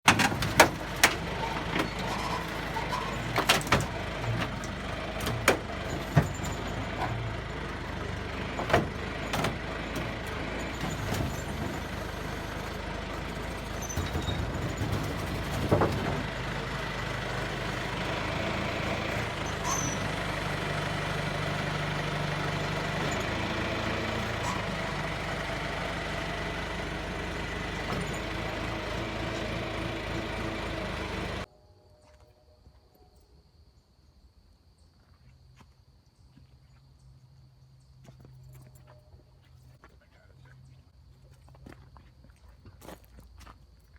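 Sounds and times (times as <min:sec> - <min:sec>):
metal crunching: 0:00.0 - 0:25.4
backhoe engine running: 0:00.0 - 0:31.5.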